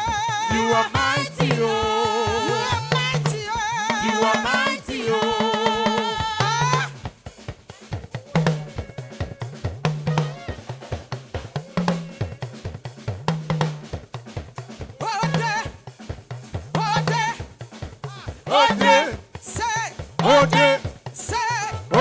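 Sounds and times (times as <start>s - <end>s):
gospel band playing: 0.0s - 13.9s, 14.8s - 22.0s
drum kit snare and kick hits: 0.0s - 22.0s
person singing: 18.5s - 19.2s, 20.2s - 22.0s.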